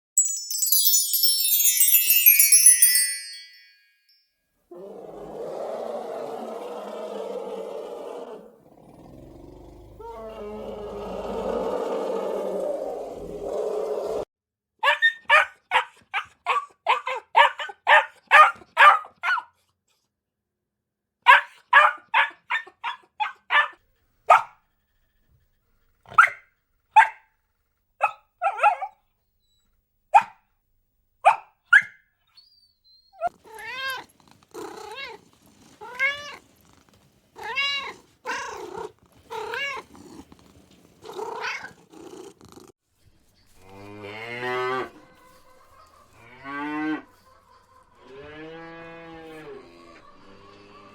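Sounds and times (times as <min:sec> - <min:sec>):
cat meowing: 0:33.2 - 0:36.5, 0:37.4 - 0:40.2, 0:41.1 - 0:41.8.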